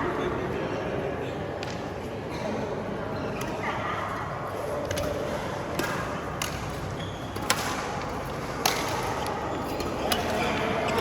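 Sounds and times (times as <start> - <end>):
rackets hitting shuttlecock: 4.9 - 11.0.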